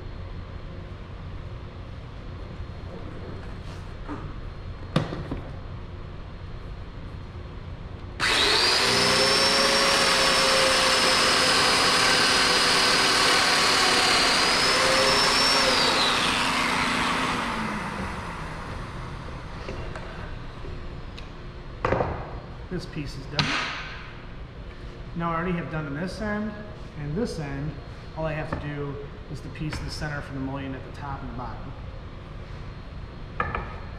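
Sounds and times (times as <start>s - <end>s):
power tool whining: 8.2s - 19.7s.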